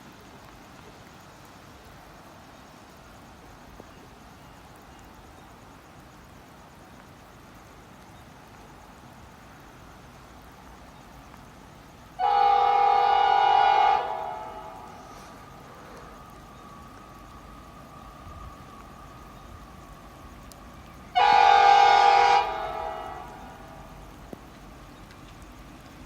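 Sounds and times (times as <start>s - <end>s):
faint background noise: 0.0s - 26.0s
train horn blast: 12.2s - 15.2s, 21.2s - 23.8s.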